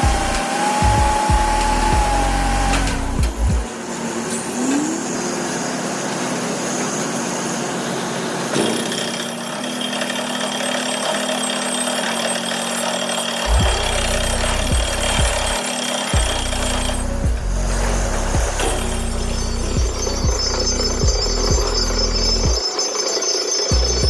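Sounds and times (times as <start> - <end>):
heavy low hammer pounding: 0.0 - 4.7, 13.3 - 22.6
drilling rig engine and compressor: 0.0 - 24.0.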